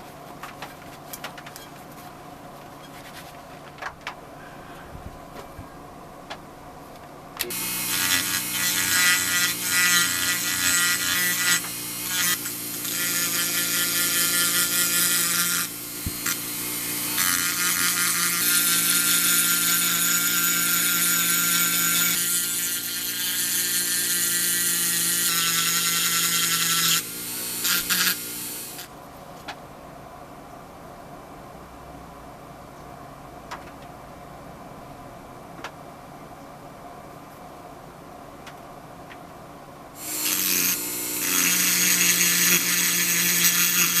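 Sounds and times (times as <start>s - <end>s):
electric power tool running: 7.4s - 28.9s, 40.0s - 44.0s.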